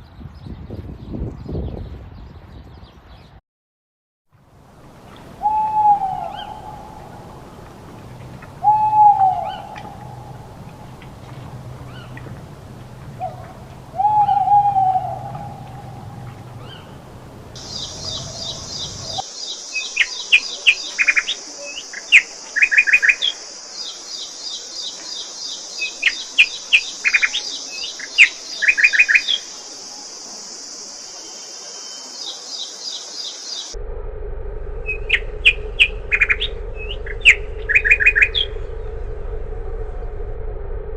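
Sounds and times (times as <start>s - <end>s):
steady high-pitched hiss: 4.4s - 40.4s
small birds chirping in trills: 4.9s - 33.8s, 34.9s - 38.7s
owl hooting: 5.1s - 31.0s, 34.8s - 38.7s.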